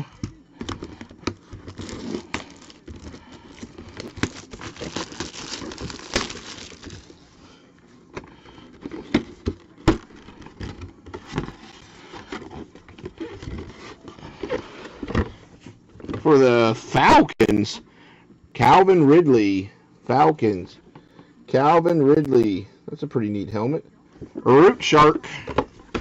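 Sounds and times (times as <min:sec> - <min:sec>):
packaging crinkling and rustling: 0:00.6 - 0:07.4.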